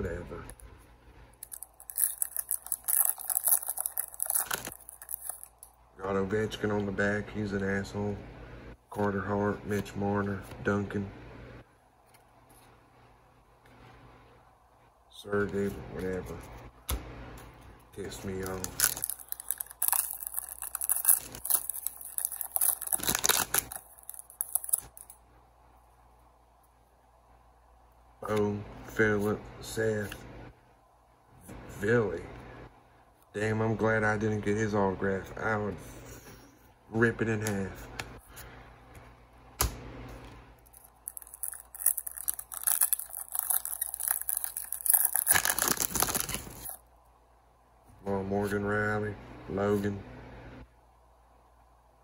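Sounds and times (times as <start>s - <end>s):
plastic wrapper tearing and crinkling: 1.4s - 5.7s, 18.2s - 25.1s, 40.6s - 46.8s
cards shuffled by hand: 18.1s - 25.1s, 39.6s - 46.8s.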